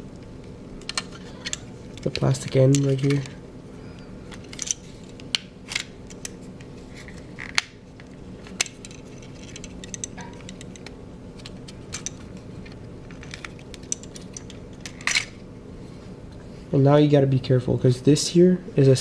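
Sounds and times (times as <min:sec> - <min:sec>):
faint steady hum: 0:00.0 - 0:19.0
plastic parts clicking and clattering: 0:00.8 - 0:03.4, 0:04.3 - 0:06.4, 0:08.4 - 0:15.4.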